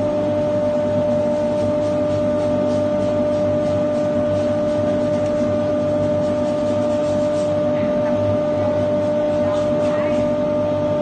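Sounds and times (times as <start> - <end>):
machine running noise: 0.0 - 11.0.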